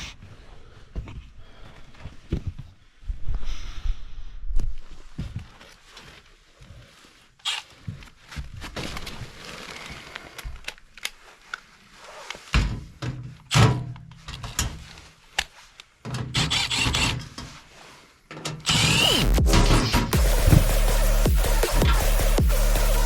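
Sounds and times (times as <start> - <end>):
tool handling clicks and knocks: 12.3 - 17.6, 18.3 - 18.9
cordless drill running: 16.4 - 17.2, 18.7 - 19.5
loud electronic music: 19.0 - 23.0.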